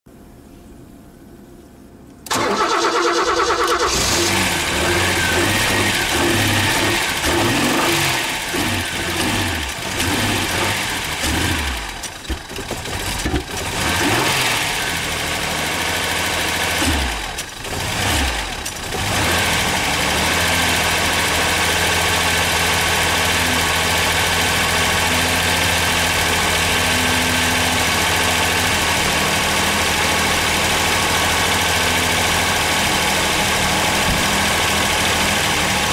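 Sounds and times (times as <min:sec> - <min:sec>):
starter motor cranking: 0:02.3 - 0:14.8
car engine idling unevenly: 0:03.8 - 0:13.8, 0:14.4 - 0:35.9.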